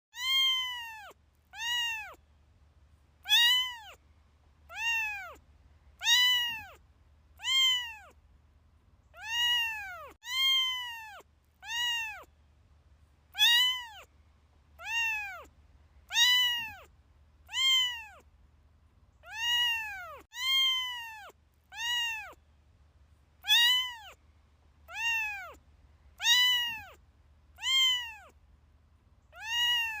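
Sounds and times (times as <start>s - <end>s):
kitten meowing: 0.2s - 2.2s, 3.2s - 4.0s, 4.7s - 5.4s, 6.0s - 6.8s, 7.4s - 8.2s, 9.1s - 12.3s, 13.3s - 14.1s, 14.8s - 15.5s, 16.1s - 18.2s, 19.2s - 22.4s, 23.4s - 24.2s, 24.9s - 25.6s, 26.2s - 27.0s, 27.6s - 28.3s, 29.3s - 30.0s.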